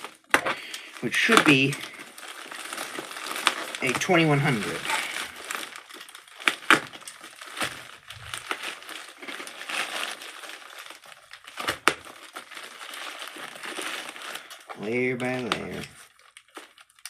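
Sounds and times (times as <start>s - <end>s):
packaging rustling and crinkling: 0.0s - 17.0s.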